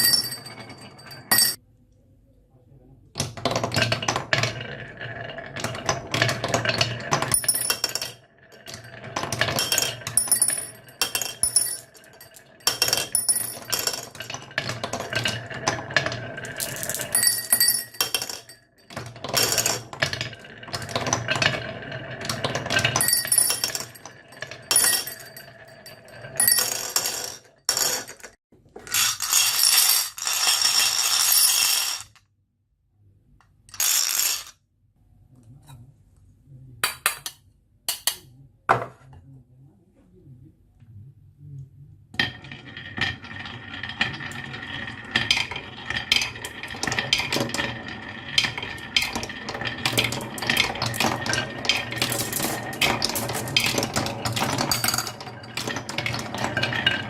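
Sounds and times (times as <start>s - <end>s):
marbles rolling down a track: 3.2s - 32.2s, 33.7s - 34.6s, 42.2s - 57.0s
marbles clinking: 3.8s - 28.3s, 28.9s - 32.2s, 33.7s - 34.5s, 42.2s - 57.0s.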